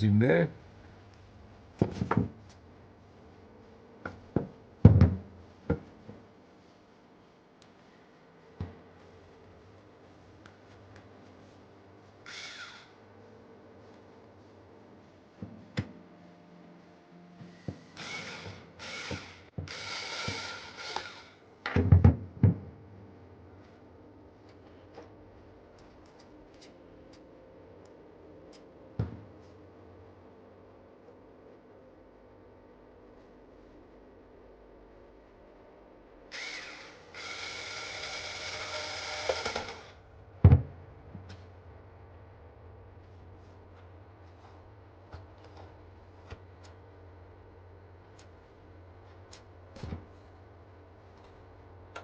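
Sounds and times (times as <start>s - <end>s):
power screwdriver whirring: 12.3s - 12.9s, 18.0s - 21.4s, 36.3s - 40.0s.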